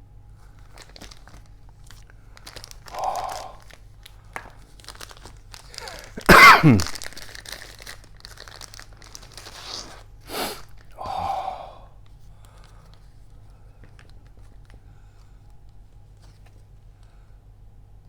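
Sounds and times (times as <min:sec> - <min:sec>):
plastic film crinkling: 0:00.4 - 0:11.0
plastic wrap ripping: 0:00.5 - 0:11.0.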